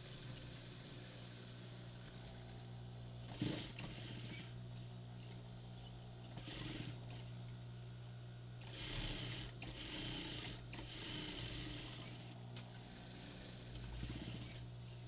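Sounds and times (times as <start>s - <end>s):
sewing machine stitching: 3.3s - 4.5s, 6.4s - 7.3s, 8.7s - 12.3s, 13.7s - 14.6s.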